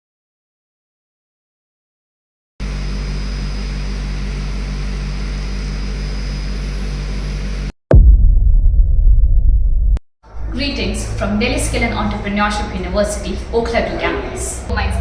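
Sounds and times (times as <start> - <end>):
mechanical drone with whine: 2.6 - 7.7, 9.8 - 15.0
loud deep rumble: 7.9 - 15.0.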